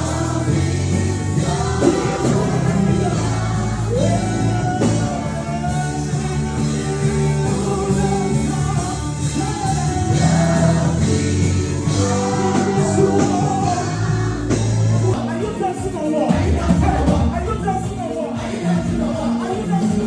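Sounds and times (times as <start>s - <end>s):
gospel singing with band: 0.0s - 20.0s.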